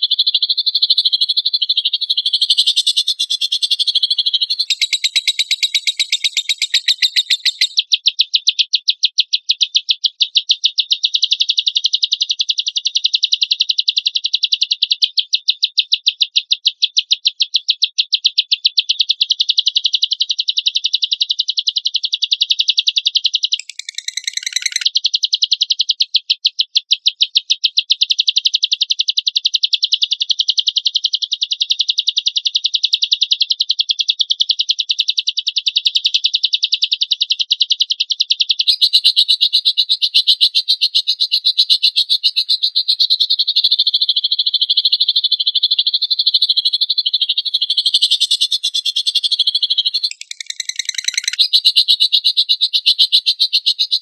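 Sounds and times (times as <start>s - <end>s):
lovebird rasping trill: 0.0s - 7.8s, 23.6s - 24.9s, 38.7s - 54.0s.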